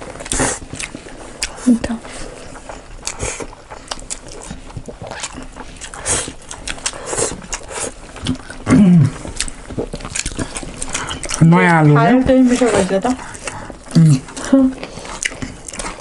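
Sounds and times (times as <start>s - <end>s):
chewing with lips smacking: 0.0s - 16.0s
person humming: 8.7s - 9.2s.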